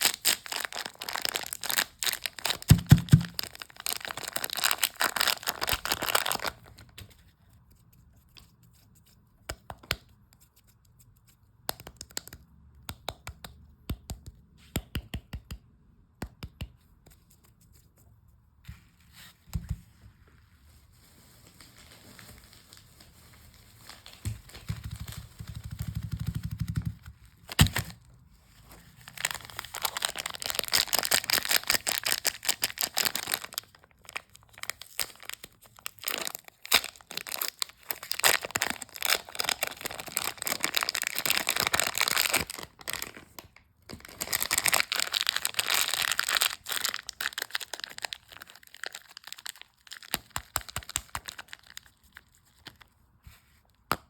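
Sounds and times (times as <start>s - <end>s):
packaging crinkling: 0.0s - 7.0s, 29.0s - 52.8s.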